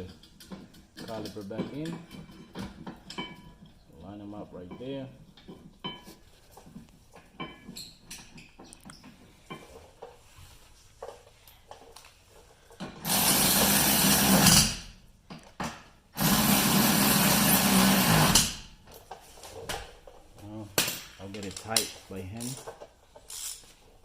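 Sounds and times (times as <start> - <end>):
power tool driving bolts: 12.8 - 18.7.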